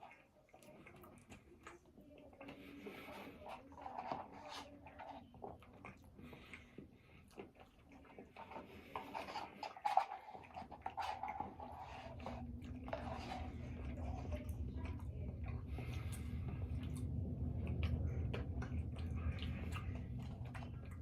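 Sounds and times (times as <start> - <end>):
chewing: 0.0 - 21.0
low hum: 8.4 - 21.0.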